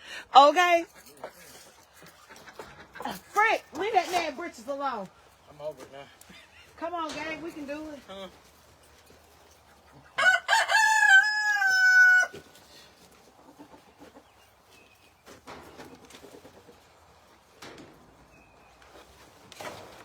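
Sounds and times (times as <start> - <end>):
rooster crowing: 10.2 - 12.4.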